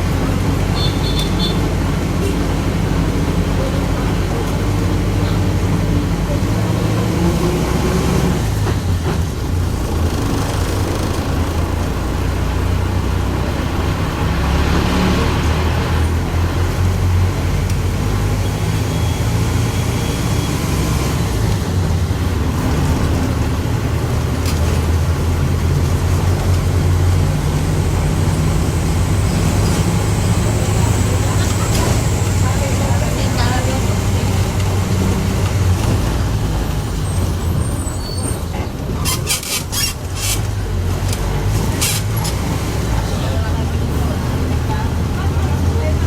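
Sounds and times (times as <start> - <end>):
bus engine drone: 0.0 - 46.0
road noise: 0.0 - 46.0
differential growling: 9.7 - 12.6.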